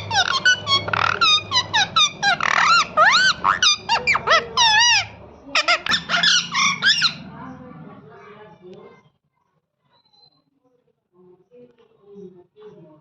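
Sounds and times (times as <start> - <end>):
parrot chirping and whistling: 0.0 - 7.2.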